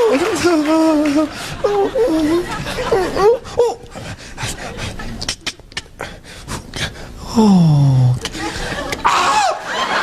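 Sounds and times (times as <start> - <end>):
man making pitched vocal sound: 1.2 - 4.0, 5.2 - 8.3
breathy panting noises: 2.4 - 5.2.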